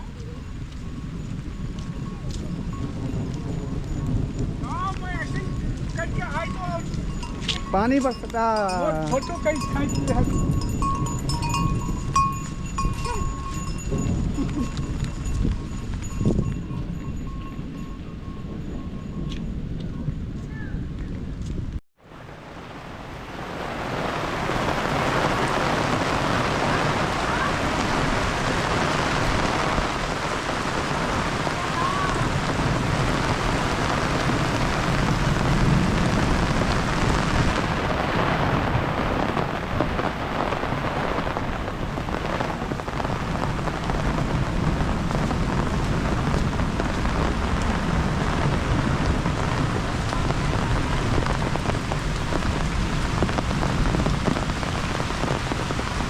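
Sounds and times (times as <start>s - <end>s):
heavy rain: 22.0s - 56.0s
low rolling thunder: 22.4s - 56.0s.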